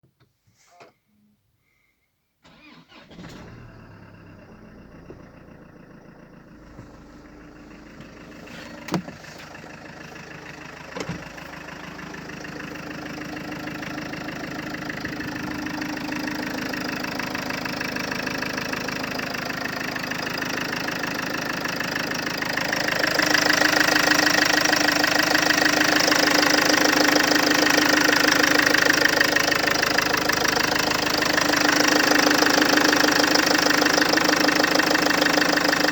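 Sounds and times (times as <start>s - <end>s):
engine running with a knock: 6.5s - 7.3s, 7.9s - 10.2s, 10.9s - 11.5s.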